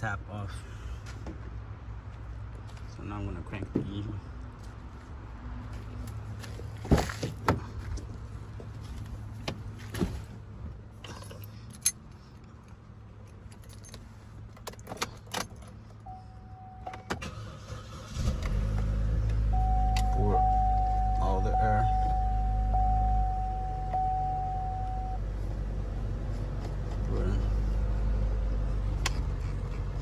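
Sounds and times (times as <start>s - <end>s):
keys jingling: 13.2s - 15.8s
car engine starting and running: 13.3s - 30.0s.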